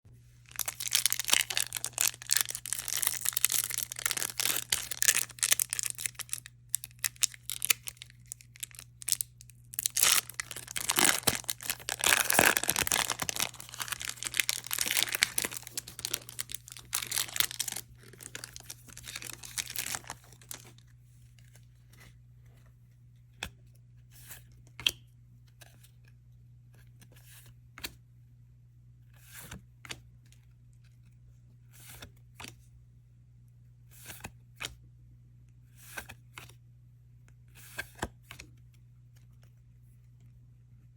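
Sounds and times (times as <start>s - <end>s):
foil wrapper tearing and crinkling: 0.5s - 20.8s.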